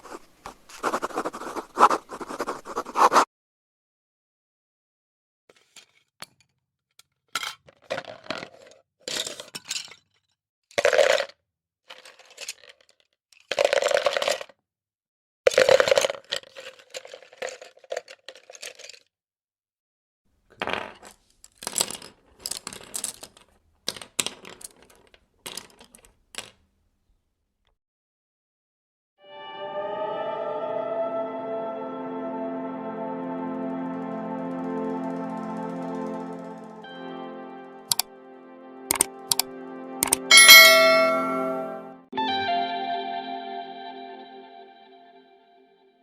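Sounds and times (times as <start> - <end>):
pens and pencils clattering: 0.0 - 3.2, 7.4 - 10.2, 10.8 - 14.6, 15.5 - 19.1, 20.5 - 26.6.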